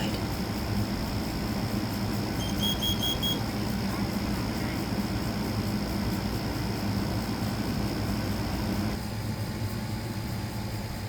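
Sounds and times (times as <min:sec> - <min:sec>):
steady low hum: 0:00.0 - 0:11.0
high-pitched alarm beeps: 0:02.4 - 0:03.5.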